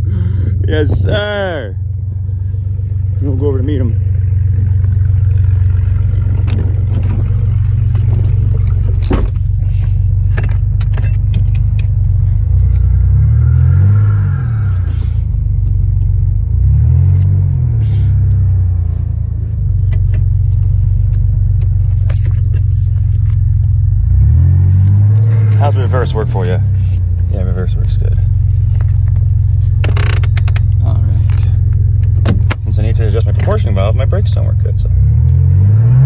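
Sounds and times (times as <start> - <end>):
clicks and rattles: 6.2 - 12.0, 28.8 - 32.7
truck engine revving: 11.4 - 15.8, 23.9 - 28.3.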